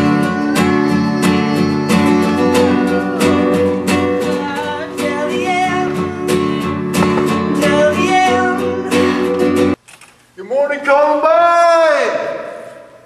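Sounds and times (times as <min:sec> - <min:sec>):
acoustic guitar strumming: 0:00.0 - 0:09.8
person singing: 0:00.0 - 0:09.8.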